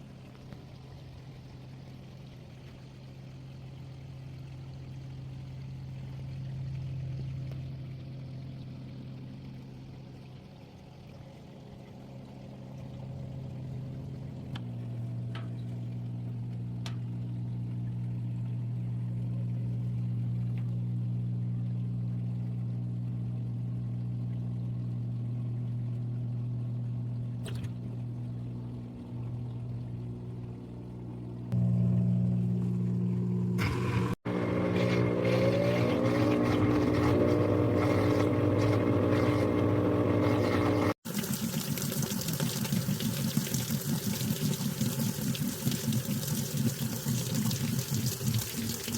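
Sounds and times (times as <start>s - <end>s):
washing machine motor hum: 13.0s - 48.9s
water rushing in: 33.6s - 48.9s.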